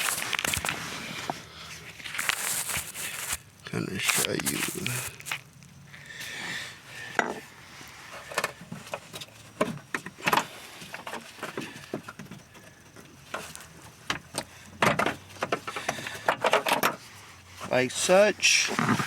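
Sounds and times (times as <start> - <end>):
plastic-and-metal clatter: 13.3 - 17.0.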